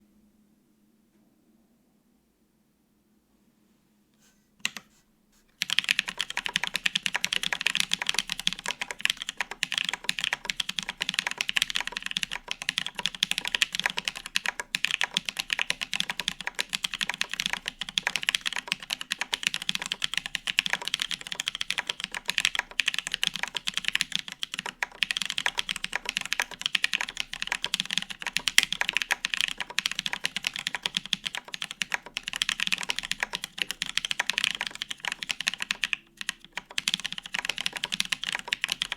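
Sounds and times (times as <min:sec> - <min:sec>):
mechanical keyboard typing: 0:05.6 - 0:38.9.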